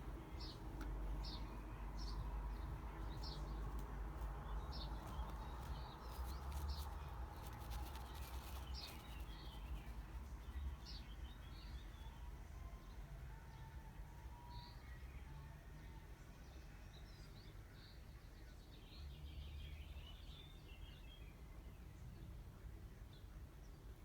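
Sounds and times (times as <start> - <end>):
bird chirping: 0.0 - 13.0
low background rumble: 0.0 - 13.1.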